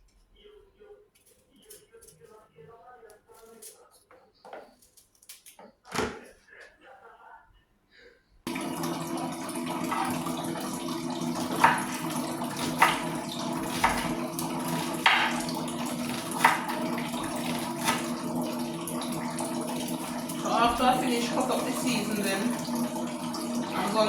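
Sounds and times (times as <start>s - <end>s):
knife chopping on cutting board: 9.9s - 10.2s, 11.4s - 18.3s.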